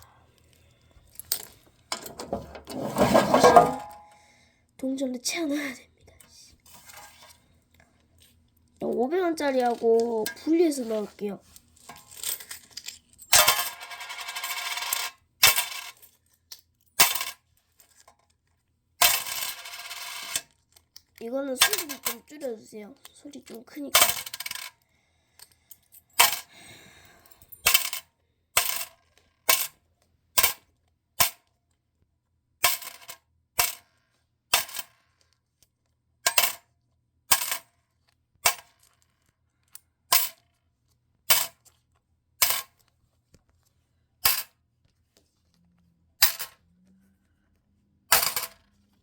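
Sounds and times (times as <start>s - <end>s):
coins clinking into hopper: 1.2s - 4.0s, 11.8s - 16.2s, 17.0s - 17.4s, 19.0s - 20.5s, 21.6s - 22.3s, 24.0s - 24.7s, 27.3s - 28.9s, 32.6s - 33.8s, 34.6s - 35.0s, 37.3s - 37.7s, 48.1s - 48.7s.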